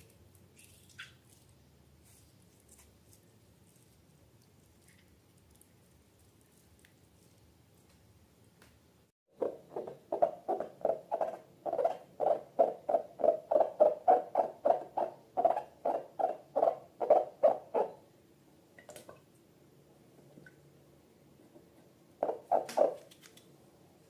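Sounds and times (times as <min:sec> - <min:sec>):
slime squelching: 0:00.0 - 0:08.1.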